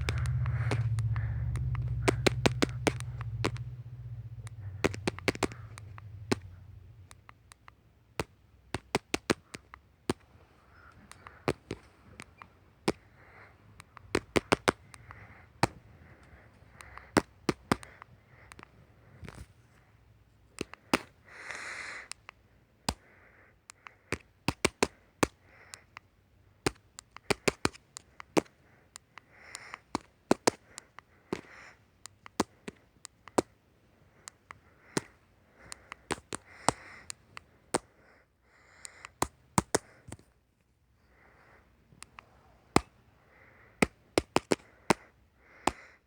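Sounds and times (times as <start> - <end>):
beatboxing clicks and pops: 0.0 - 3.8, 4.4 - 19.5, 20.6 - 26.1, 26.7 - 33.6, 34.2 - 38.0, 38.8 - 40.3, 42.0 - 43.0, 43.8 - 45.9
hissing breaths: 0.0 - 7.2, 10.5 - 19.8, 20.6 - 22.3, 28.6 - 29.9, 34.0 - 40.3.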